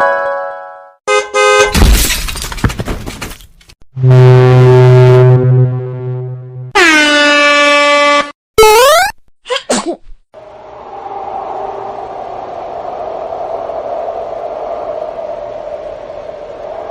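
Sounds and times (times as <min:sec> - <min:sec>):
crash of something breaking: 0:01.7 - 0:03.5
air horn blast: 0:04.0 - 0:08.4
tone dropping in pitch: 0:08.6 - 0:09.1
quick rising tone: 0:10.4 - 0:16.9.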